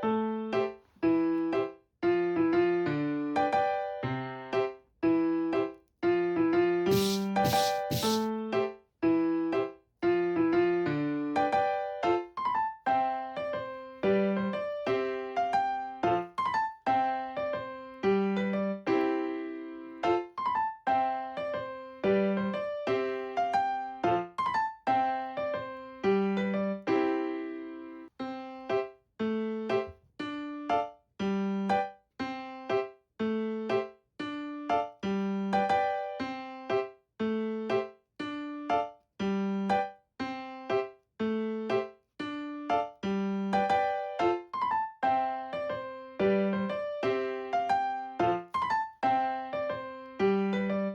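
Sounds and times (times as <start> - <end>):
bouncy piano tune: 6.9 - 8.3, 11.4 - 27.8, 28.4 - 50.9.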